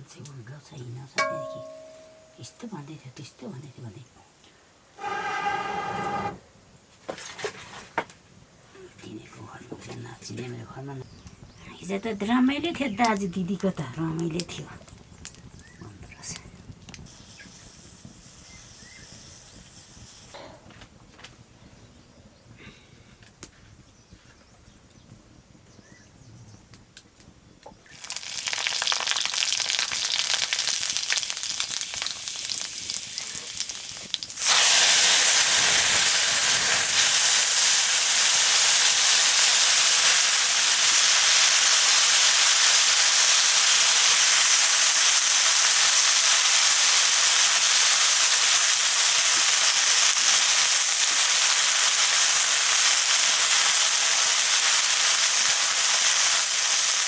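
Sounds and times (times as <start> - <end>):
food sizzling in hot oil: 1.2 - 2.2, 14.9 - 20.4, 27.9 - 57.0.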